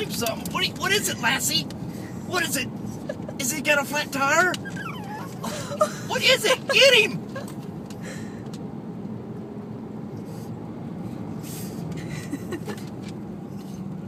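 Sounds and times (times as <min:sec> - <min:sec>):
car engine hum and road noise: 0:00.0 - 0:14.0
dog puffing and snorting: 0:04.5 - 0:05.8.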